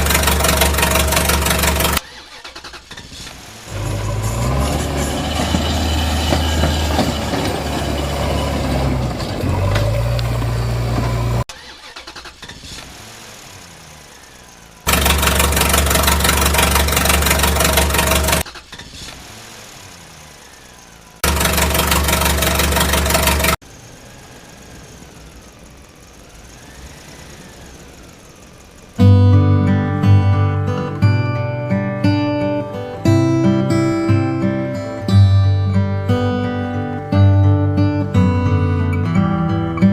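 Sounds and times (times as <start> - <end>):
engine running: 0.0 - 39.9
strummed acoustic guitar music: 29.0 - 39.9.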